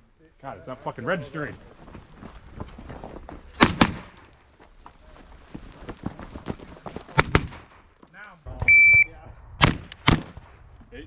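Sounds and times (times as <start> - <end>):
rifle shots: 3.6 - 4.2, 9.6 - 10.6.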